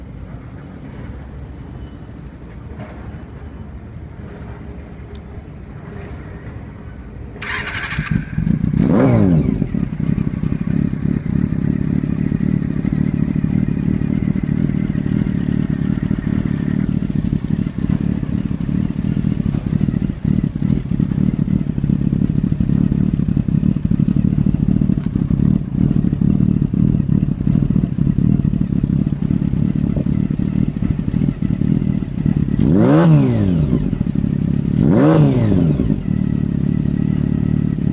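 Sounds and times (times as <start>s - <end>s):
starter motor cranking: 7.4s - 8.6s
motorcycle engine idling: 7.4s - 34.9s, 35.7s - 37.9s.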